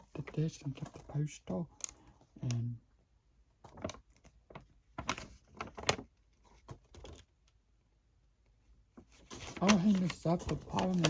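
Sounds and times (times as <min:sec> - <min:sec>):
paper poster rustling: 0:03.7 - 0:07.2, 0:09.0 - 0:11.0.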